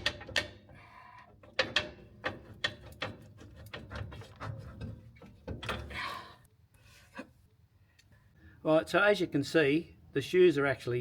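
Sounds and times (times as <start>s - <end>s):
sharp metal clicks and knocks: 0.0s - 5.9s.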